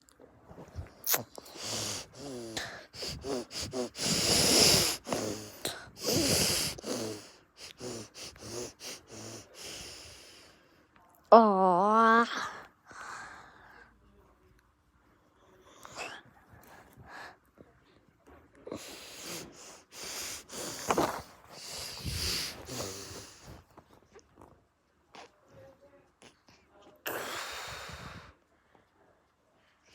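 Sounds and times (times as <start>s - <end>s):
person sneezing: 1.0s - 9.9s
breathy gasps: 1.4s - 10.6s, 18.7s - 23.6s.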